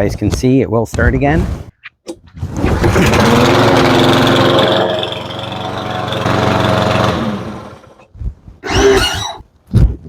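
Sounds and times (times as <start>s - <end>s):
lawnmower engine starting and running: 2.6s - 8.1s.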